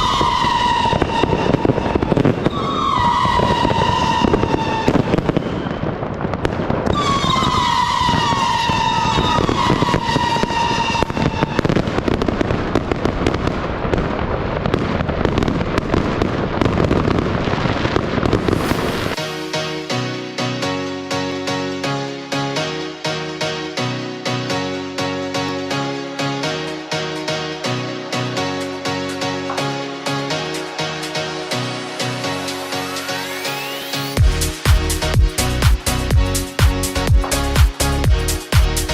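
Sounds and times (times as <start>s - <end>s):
falling whistles: 0.0s - 6.0s, 6.9s - 11.4s
fireworks bangs and crackling: 0.0s - 19.9s, 25.5s - 38.9s
music: 18.5s - 38.9s.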